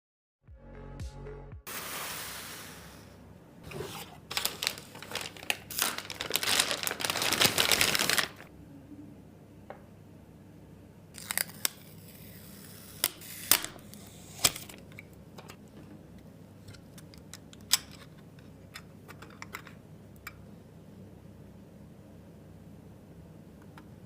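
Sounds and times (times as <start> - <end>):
rustling: 3.7 - 8.5.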